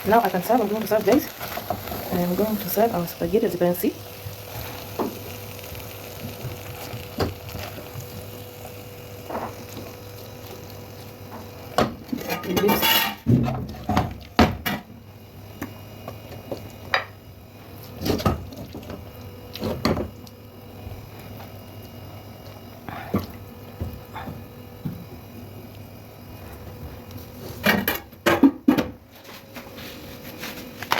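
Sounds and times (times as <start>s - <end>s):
utensil scraping pot and plate: 12.1s - 13.3s.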